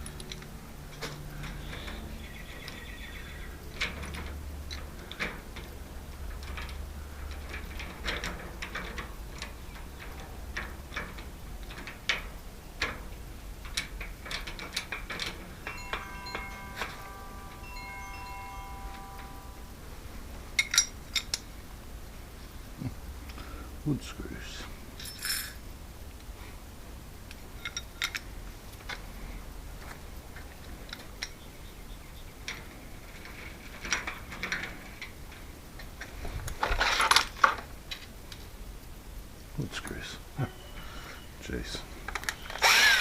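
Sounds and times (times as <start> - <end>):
metal lock parts clicking: 6.3 - 17.1, 20.6 - 21.5
metal piece ringing: 15.6 - 19.9.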